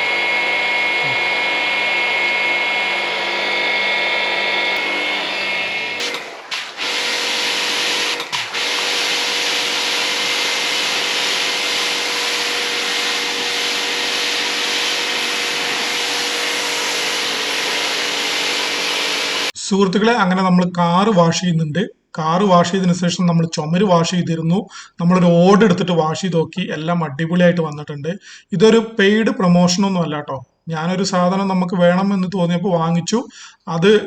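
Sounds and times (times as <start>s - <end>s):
pressure washer running: 0.0s - 19.6s.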